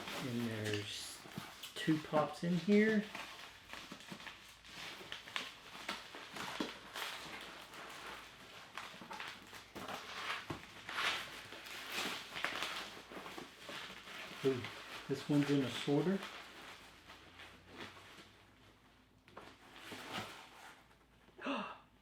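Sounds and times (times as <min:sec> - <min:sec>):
packaging rustling: 0:00.0 - 0:20.8.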